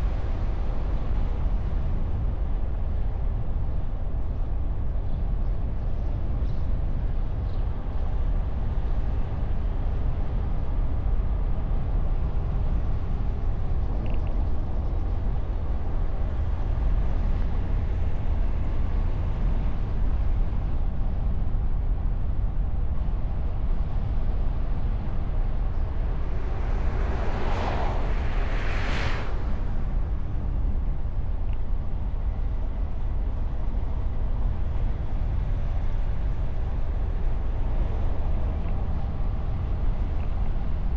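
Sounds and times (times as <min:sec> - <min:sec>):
road rumble: 0:00.0 - 0:40.9
wind on moving car: 0:00.0 - 0:40.9
passing traffic whooshes: 0:23.2 - 0:40.9.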